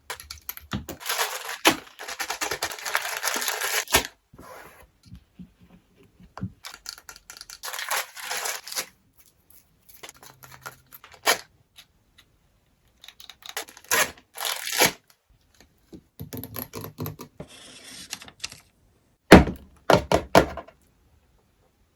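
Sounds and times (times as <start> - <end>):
packaging tearing and rustling: 0.2 - 4.2, 6.6 - 8.9, 13.6 - 15.0.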